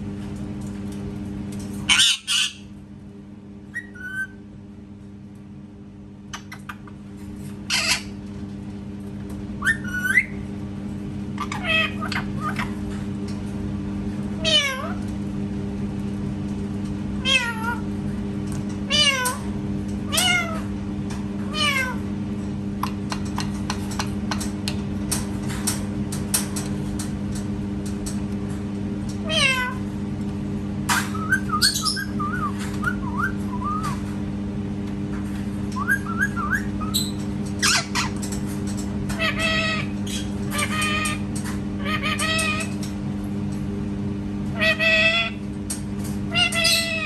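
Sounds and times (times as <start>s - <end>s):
steady low hum: 0.0s - 47.0s
parrot meowing: 11.4s - 12.7s, 14.4s - 15.0s, 17.2s - 17.8s, 18.9s - 19.4s, 20.1s - 20.7s, 21.5s - 22.0s, 29.2s - 29.8s, 39.2s - 41.2s, 41.8s - 42.8s, 44.5s - 45.4s, 46.3s - 47.0s
parrot warbling whistles and clicks: 30.9s - 34.1s, 35.7s - 38.2s.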